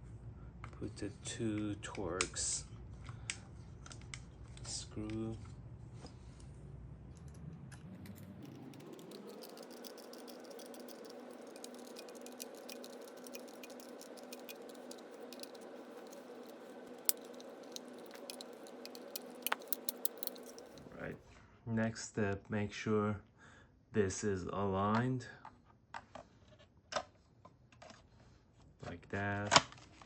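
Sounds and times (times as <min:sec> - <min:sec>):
screwdriver clicking and rattling: 0:08.4 - 0:21.1.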